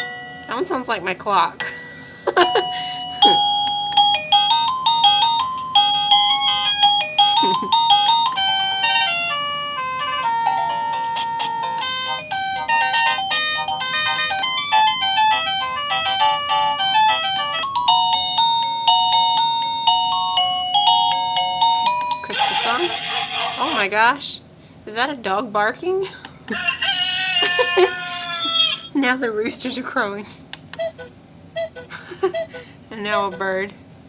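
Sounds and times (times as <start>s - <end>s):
doorbell chime melody: 0.0s - 0.7s, 2.3s - 22.9s.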